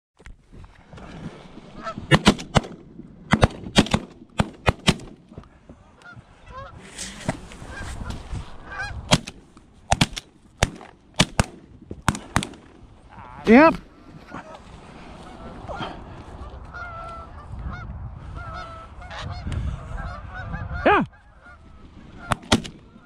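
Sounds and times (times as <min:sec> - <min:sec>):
geese honking: 0:01.7 - 0:02.1, 0:05.8 - 0:09.0, 0:13.0 - 0:23.0
shotgun shots: 0:02.1 - 0:05.2, 0:09.1 - 0:12.8, 0:22.3 - 0:22.9.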